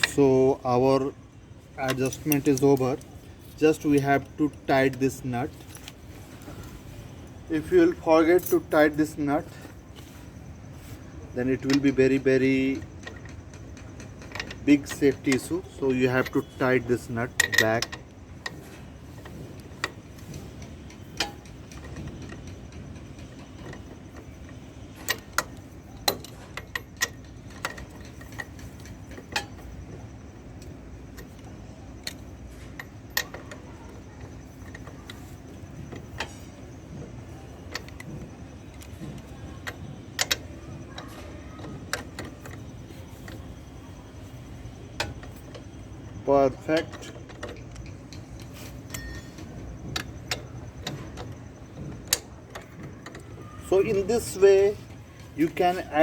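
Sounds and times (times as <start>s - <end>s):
steady low hum: 0.0s - 56.0s
wrench clicking on metal: 11.5s - 30.0s, 30.6s - 56.0s.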